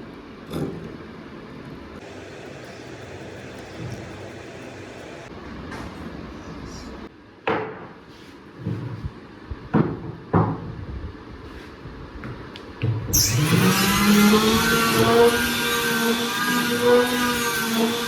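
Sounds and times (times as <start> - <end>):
sharp knocks on workpiece: 9.7 - 10.7
power tool motor spinning up: 13.1 - 18.0.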